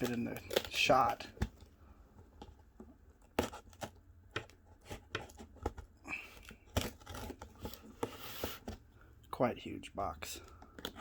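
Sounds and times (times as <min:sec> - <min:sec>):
cardboard rustling scrape: 0:06.6 - 0:08.9.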